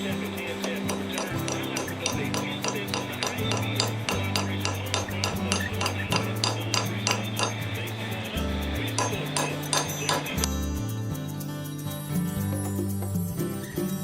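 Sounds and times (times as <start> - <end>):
music: 0.0 - 14.0
metal wedge tapped into wood: 0.7 - 7.6, 9.0 - 10.5.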